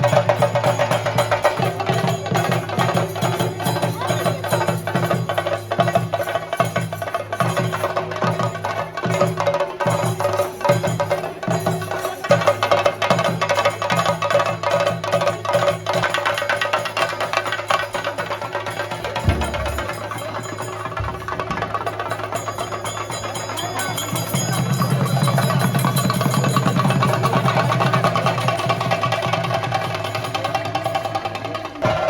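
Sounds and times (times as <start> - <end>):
fast dense drumming: 11.7 - 32.0.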